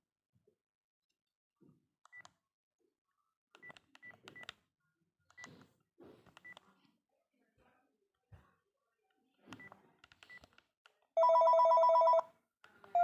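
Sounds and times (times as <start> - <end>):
phone keypad beeps: 11.2 - 12.2.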